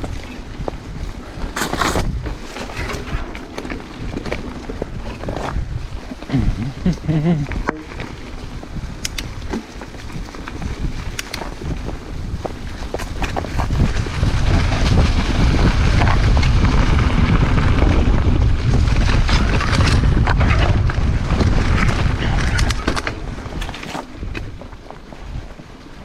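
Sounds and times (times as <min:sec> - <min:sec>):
wind buffeting microphone: 0:00.0 - 0:26.0
bike knocks and rattles: 0:07.0 - 0:24.9.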